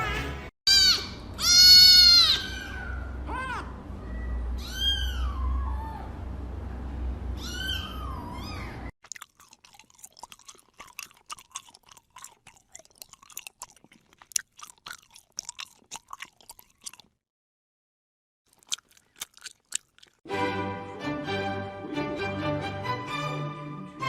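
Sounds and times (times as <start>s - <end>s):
cat meowing: 0.7s - 6.1s, 7.4s - 8.9s
crunching and chewing: 9.0s - 17.2s, 18.5s - 20.2s.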